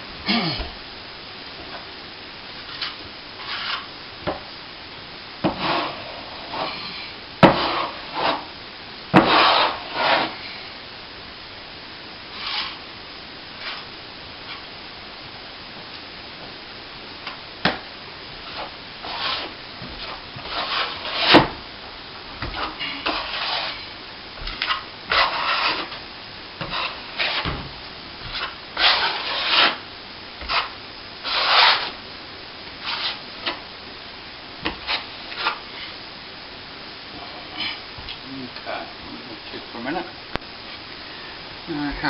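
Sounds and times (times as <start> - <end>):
trowel scraping plaster: 2.7 - 3.9, 5.5 - 8.5, 9.2 - 10.4, 12.3 - 12.8, 18.4 - 21.5, 22.5 - 23.9, 24.5 - 26.0, 26.6 - 27.5, 28.2 - 29.8, 30.4 - 32.0, 32.8 - 33.6.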